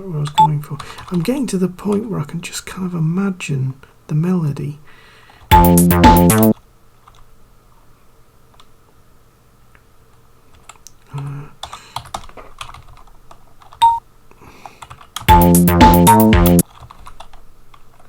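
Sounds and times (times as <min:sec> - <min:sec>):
short sampled notes: 0:05.5 - 0:06.5, 0:15.3 - 0:16.6
keyboard keys tapping: 0:05.5 - 0:06.6, 0:14.8 - 0:17.3
tracker music playback: 0:05.5 - 0:06.6, 0:15.3 - 0:16.6.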